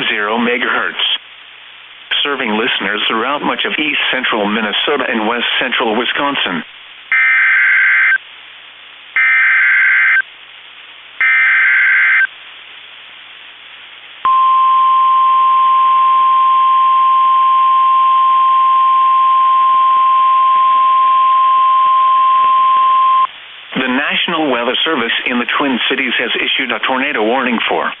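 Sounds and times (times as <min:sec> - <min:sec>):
steady warning alarm tone: 0:07.1 - 0:08.2, 0:09.2 - 0:10.2, 0:11.2 - 0:12.3.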